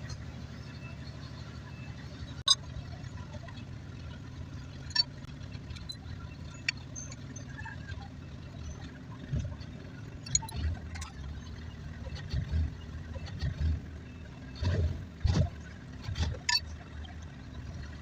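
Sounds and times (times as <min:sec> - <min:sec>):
tools clicking and tapping: 0:10.2 - 0:11.1.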